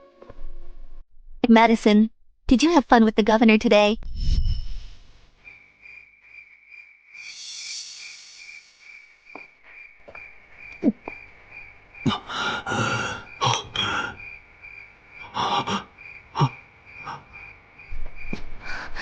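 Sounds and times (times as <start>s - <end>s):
person gasping: 12.1s - 14.2s, 15.2s - 17.3s, 18.6s - 19.0s.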